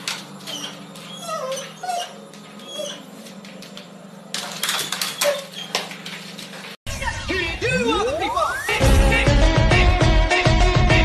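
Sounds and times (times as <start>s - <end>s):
pet whining and squeaking: 0.0s - 3.8s, 4.6s - 6.2s.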